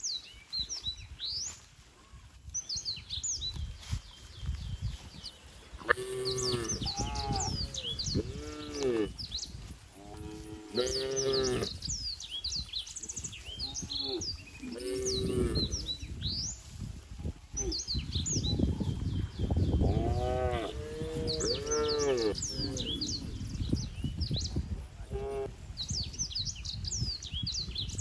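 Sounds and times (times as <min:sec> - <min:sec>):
small birds chirping: 0:00.0 - 0:28.0
cows mooing: 0:10.0 - 0:11.8, 0:19.9 - 0:23.2.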